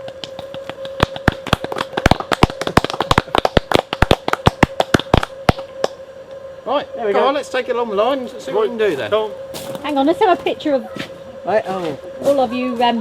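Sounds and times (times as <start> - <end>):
people clapping: 0.2 - 6.0.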